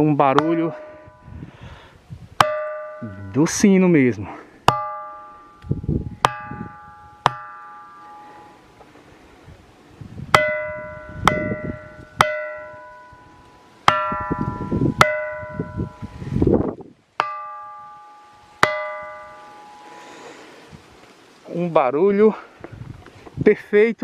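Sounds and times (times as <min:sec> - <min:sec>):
stone striking ringing rock: 0:00.0 - 0:01.5, 0:02.4 - 0:03.8, 0:04.6 - 0:08.6, 0:10.3 - 0:16.1, 0:17.2 - 0:20.1.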